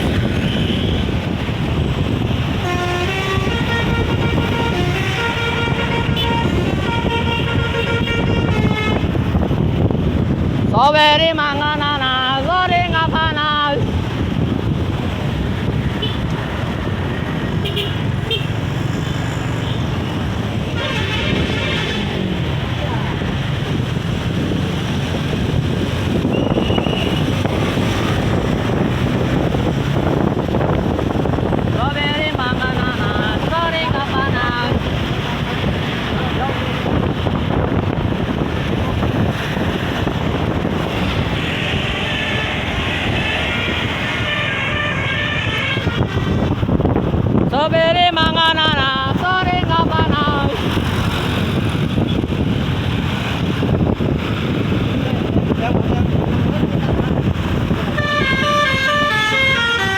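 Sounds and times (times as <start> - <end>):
low rumble of bus traffic: 0.0 - 59.9
wind buffeting microphone: 0.0 - 59.9.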